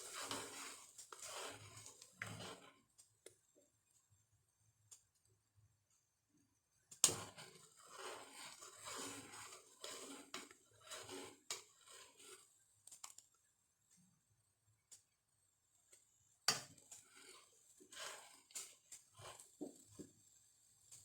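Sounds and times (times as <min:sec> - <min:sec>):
spoon scraping saucepan: 0:00.1 - 0:02.7, 0:07.1 - 0:12.5, 0:16.8 - 0:20.1.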